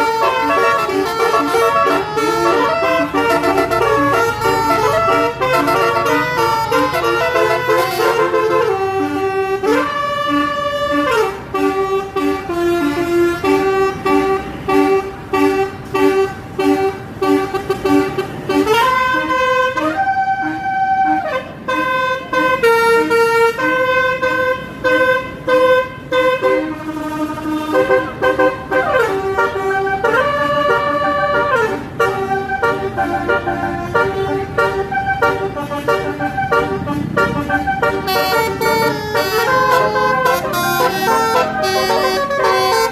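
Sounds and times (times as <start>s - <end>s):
multi-tone bus horn playing a tune: 0.0s - 42.9s.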